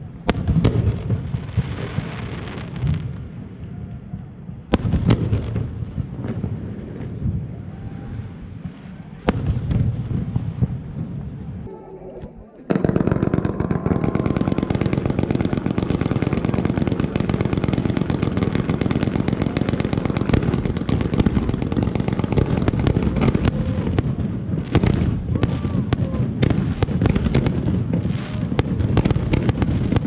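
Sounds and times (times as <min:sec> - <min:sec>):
fireworks bangs and crackles: 0:00.0 - 0:30.0.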